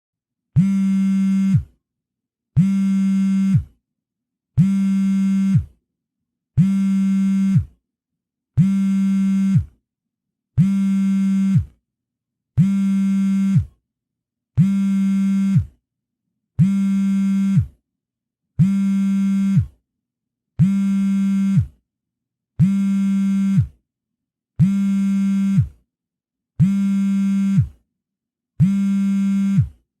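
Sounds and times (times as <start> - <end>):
mobile phone vibrating: 0.6 - 1.8, 2.6 - 3.8, 4.6 - 5.8, 6.6 - 7.8, 8.6 - 9.8, 10.6 - 11.8, 12.6 - 13.8, 14.6 - 15.8, 16.6 - 17.8, 18.6 - 19.8, 20.6 - 21.8, 22.6 - 23.8, 24.6 - 25.8, 26.6 - 27.8, 28.6 - 29.9.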